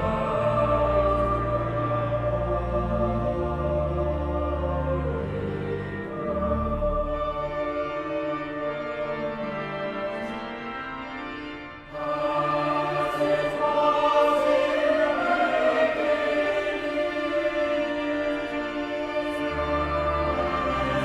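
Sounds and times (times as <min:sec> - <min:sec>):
choir singing sacred music: 0:00.0 - 0:21.0.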